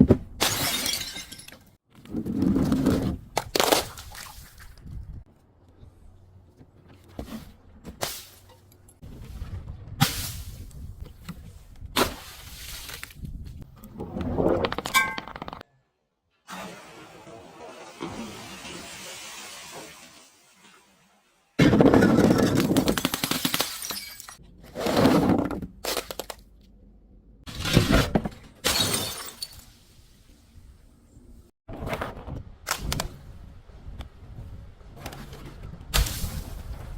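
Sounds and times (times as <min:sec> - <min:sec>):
glass shattering and crunching: 0:00.4 - 0:01.8, 0:21.9 - 0:24.4, 0:28.6 - 0:29.7.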